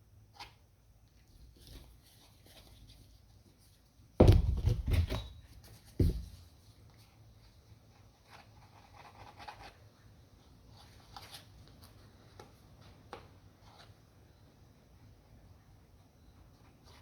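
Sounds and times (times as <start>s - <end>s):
rustling and scratching: 1.2s - 14.0s.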